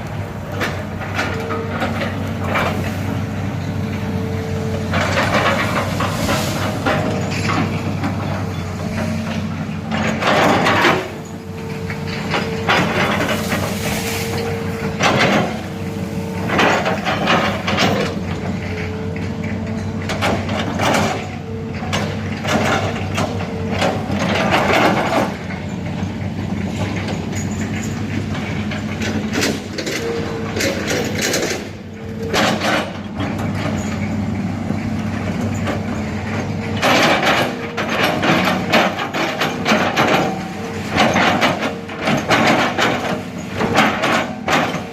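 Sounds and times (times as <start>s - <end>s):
excavator diesel engine running: 0.0s - 44.9s
machine knocking and cracking: 9.0s - 11.3s, 14.9s - 15.6s, 16.4s - 18.8s, 19.7s - 25.5s, 26.7s - 33.9s, 35.1s - 44.9s.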